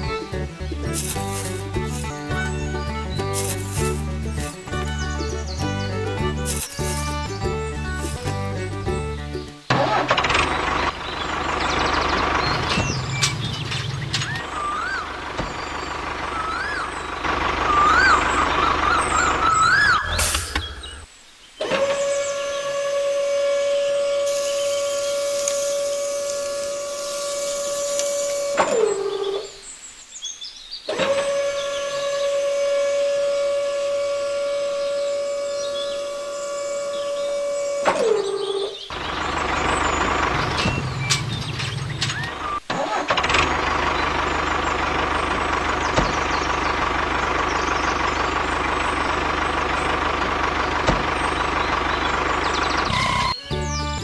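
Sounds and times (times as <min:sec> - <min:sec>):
vehicle engine running: 0:00.0 - 0:21.1, 0:21.7 - 0:29.6, 0:30.9 - 0:54.0
loud whistling tone: 0:14.2 - 0:21.0, 0:51.9 - 0:54.0.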